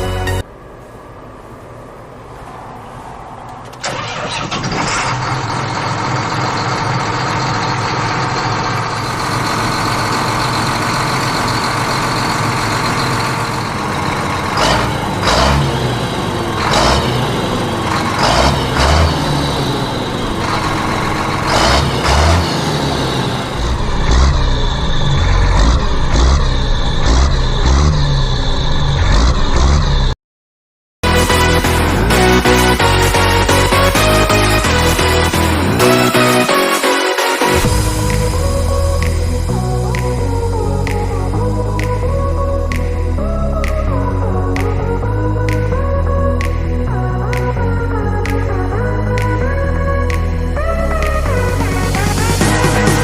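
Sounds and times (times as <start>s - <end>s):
tractor engine running: 3.5s - 30.2s, 31.0s - 53.0s
heavy pulsing low rhythm: 37.5s - 53.0s.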